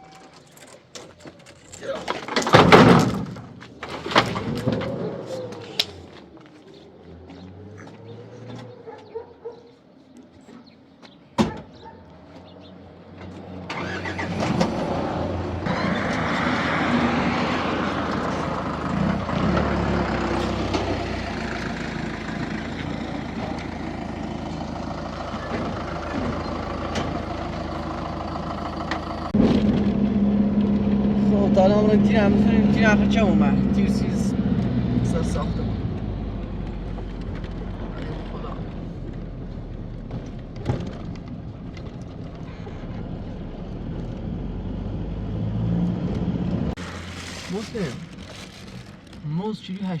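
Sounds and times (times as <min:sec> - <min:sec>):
vehicle engine starting and running: 0:00.0 - 0:09.2, 0:12.2 - 0:49.9
door shutting: 0:02.2 - 0:05.2.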